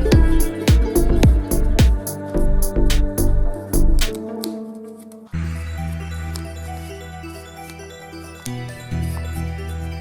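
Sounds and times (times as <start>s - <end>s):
steady low bass: 0.0s - 4.1s
background music: 0.0s - 10.0s.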